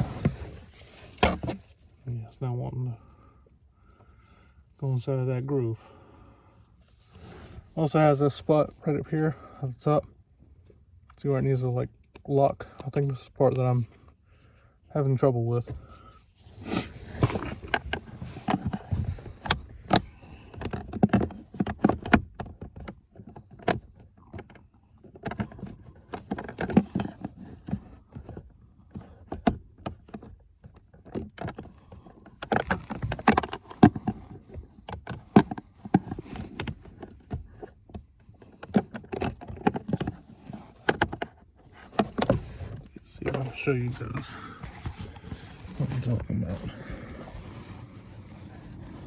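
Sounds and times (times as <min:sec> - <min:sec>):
plastic clicks and knocks: 0:17.2 - 0:42.4.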